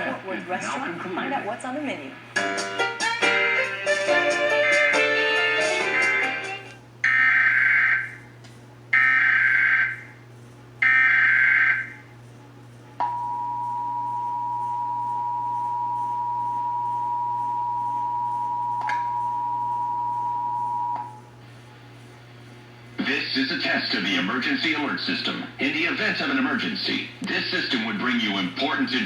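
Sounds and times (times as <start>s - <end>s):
two-tone attention signal: 13.0s - 21.2s.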